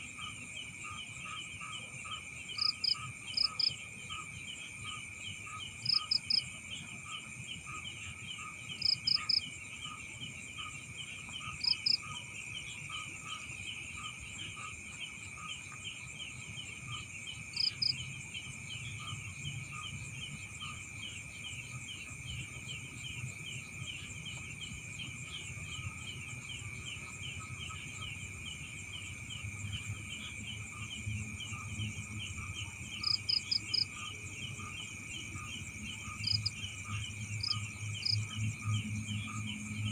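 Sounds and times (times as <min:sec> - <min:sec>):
crickets and insects chirping: 0:00.0 - 0:39.9
near pulsing cricket chirp: 0:00.0 - 0:39.9.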